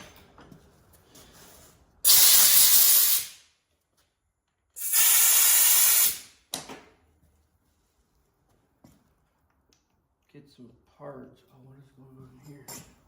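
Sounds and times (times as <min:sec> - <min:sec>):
compressed-air blow gun hissing: 0:02.1 - 0:03.4, 0:04.8 - 0:06.3.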